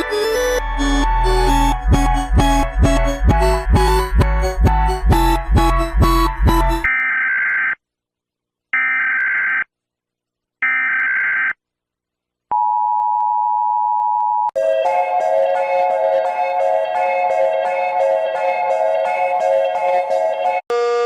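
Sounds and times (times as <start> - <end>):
music: 0.0 - 6.9, 14.6 - 20.8.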